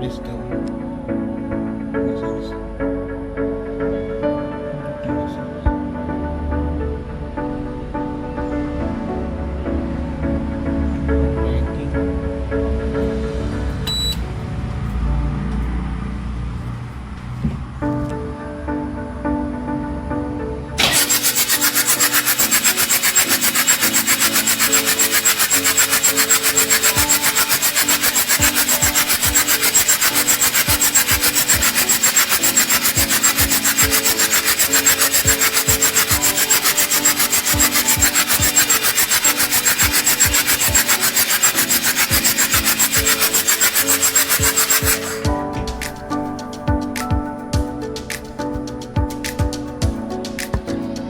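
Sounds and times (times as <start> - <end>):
background music: 0.0 - 16.5, 17.6 - 51.0
fast even scraping: 20.8 - 47.1.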